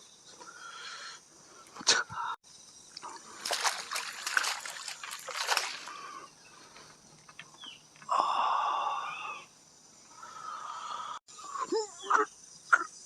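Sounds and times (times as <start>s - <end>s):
water splashing and sloshing: 2.9s - 6.3s.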